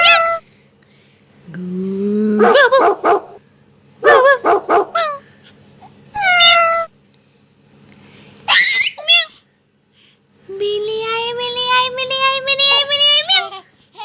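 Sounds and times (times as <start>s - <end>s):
dog barking and yipping: 2.4s - 3.4s, 4.0s - 5.1s
dog whining: 2.4s - 3.4s, 4.0s - 5.2s.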